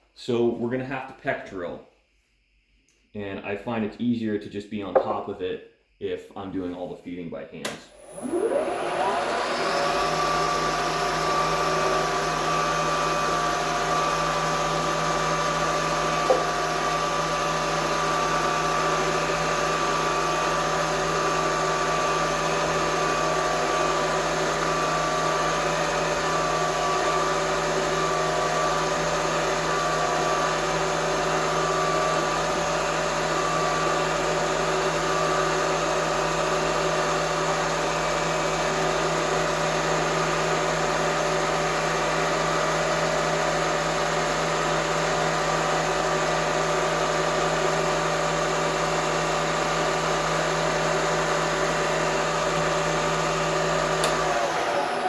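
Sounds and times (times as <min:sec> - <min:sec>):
short click: 0:54.0 - 0:54.2.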